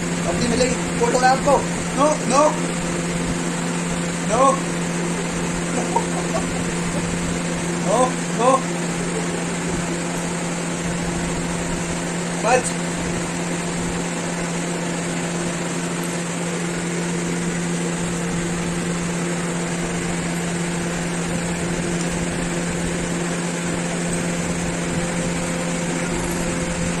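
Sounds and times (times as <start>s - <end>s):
low mechanical drone: 0.0s - 27.0s.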